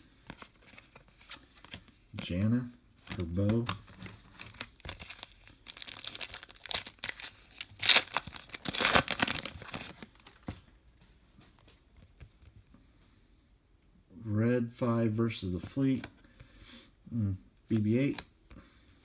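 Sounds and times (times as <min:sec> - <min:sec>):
wrapper tearing and crinkling: 0:03.1 - 0:10.4.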